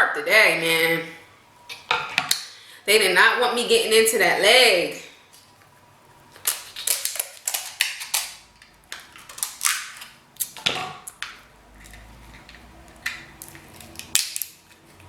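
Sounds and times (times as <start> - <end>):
crab shell cracking: 6.4 - 15.0.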